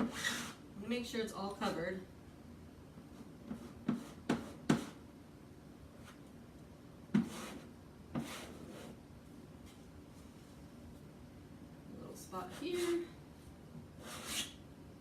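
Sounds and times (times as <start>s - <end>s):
squeegee scraping stencil: 0.0s - 0.6s, 7.2s - 9.0s, 14.0s - 14.6s.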